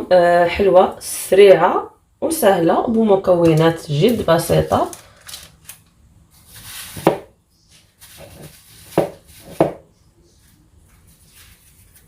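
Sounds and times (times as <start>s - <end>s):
hands handling dough: 6.3s - 12.0s.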